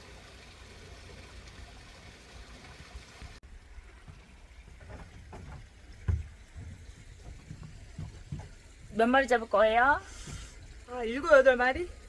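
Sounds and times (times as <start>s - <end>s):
water rushing along boat hull: 0.0s - 12.0s
low knocks: 4.0s - 9.1s.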